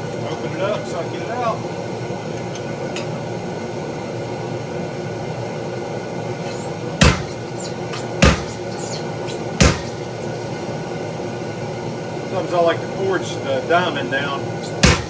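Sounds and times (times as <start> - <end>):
droning workshop background: 0.0 - 15.0
heavy hammer blows on metal: 6.5 - 10.4, 14.6 - 15.0.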